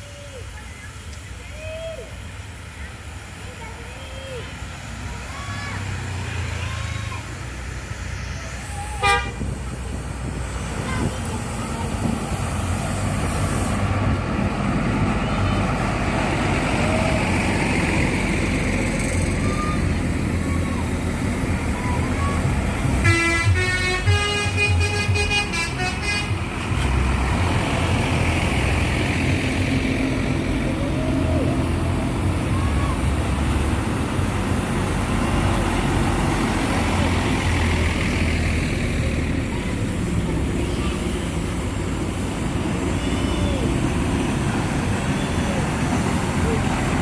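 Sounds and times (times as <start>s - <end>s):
bus engine rumbling: 0.0s - 47.0s
road traffic noise: 0.0s - 47.0s.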